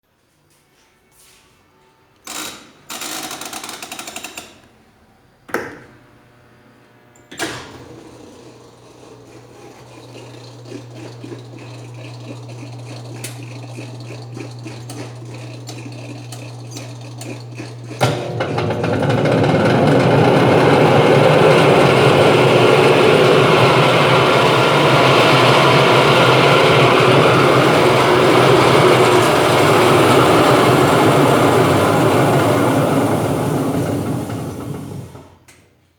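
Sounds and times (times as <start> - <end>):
washing machine motor hum: 5.7 - 35.5
washing machine clattering rumble: 9.4 - 35.4.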